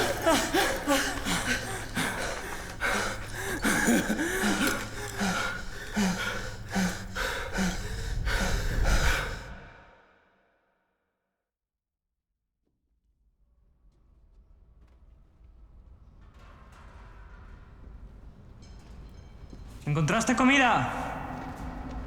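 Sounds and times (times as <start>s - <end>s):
person gasping and breathing: 0.0s - 9.9s.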